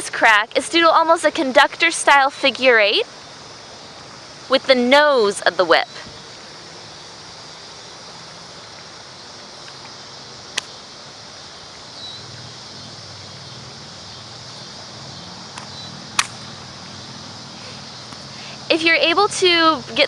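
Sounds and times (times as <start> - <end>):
outdoor background noise: 0.0 - 20.0
faint snap: 10.5 - 10.8, 15.5 - 16.4
whip cracking: 15.5 - 16.4.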